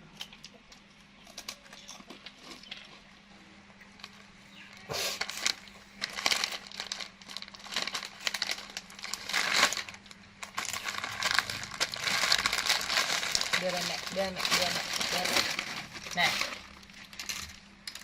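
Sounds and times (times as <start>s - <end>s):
plastic wrapper crinkling: 4.0s - 18.0s.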